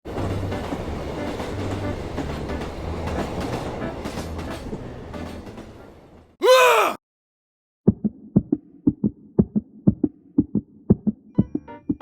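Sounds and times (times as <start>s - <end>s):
train wheels clickety-clack: 0.1s - 6.2s
man sneezing loudly: 6.4s - 7.0s.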